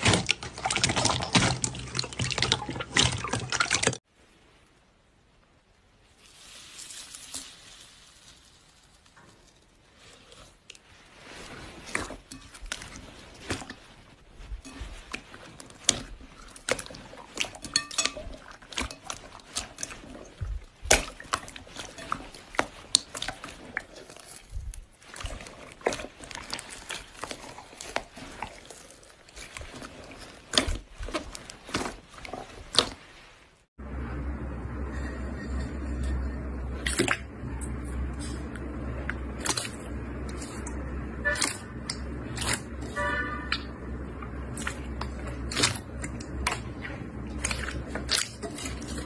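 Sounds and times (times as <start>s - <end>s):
steady low-pitched sound: 33.8s - 47.9s.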